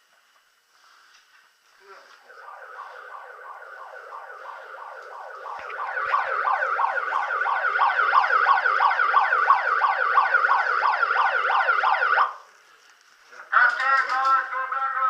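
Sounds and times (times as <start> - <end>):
electronic alarm siren: 2.2 - 12.4.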